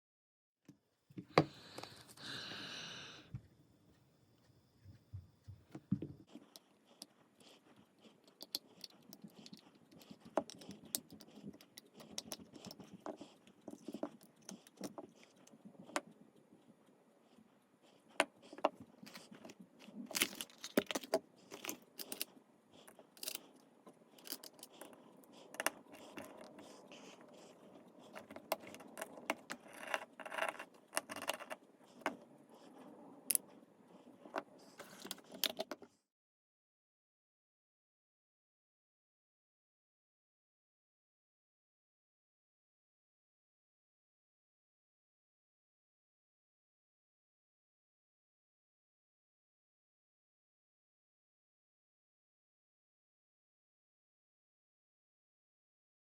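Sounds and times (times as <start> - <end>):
small hard objects clicking and rattling: 20.1 - 22.3.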